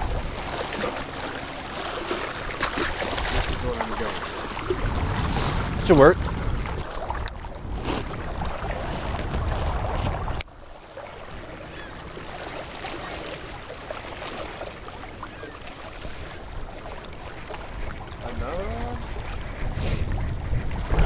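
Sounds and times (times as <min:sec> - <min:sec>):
wind buffeting microphone: 0:00.0 - 0:01.3, 0:02.4 - 0:10.6, 0:16.0 - 0:21.0
wind and water hiss: 0:00.0 - 0:21.0.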